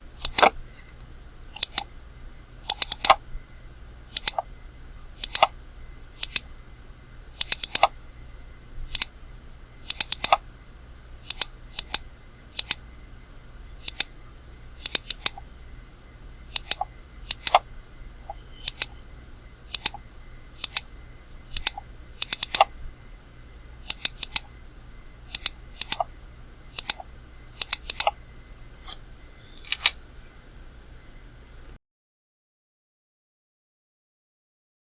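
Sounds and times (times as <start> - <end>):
low steady hum: 0.0 - 31.8
computer mouse button clicking: 0.2 - 0.5, 1.6 - 1.9, 2.7 - 3.2, 4.2 - 4.4, 5.2 - 5.5, 6.2 - 6.5, 7.4 - 7.9, 8.9 - 9.1, 9.9 - 10.4, 11.3 - 12.0, 12.6 - 12.8, 13.8 - 14.1, 14.8 - 15.4, 16.6 - 17.6, 18.3 - 19.0, 19.7 - 20.0, 20.6 - 20.9, 21.5 - 22.7, 23.9 - 24.5, 25.3 - 26.1, 26.8 - 27.0, 27.6 - 28.2.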